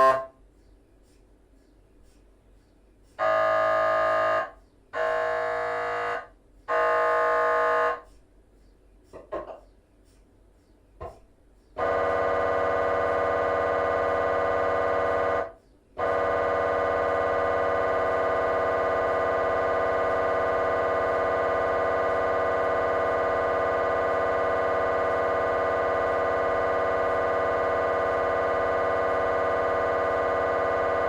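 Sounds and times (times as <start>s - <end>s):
mri scanner buzzing tone: 0.0s - 0.3s, 3.2s - 8.1s, 11.8s - 31.0s.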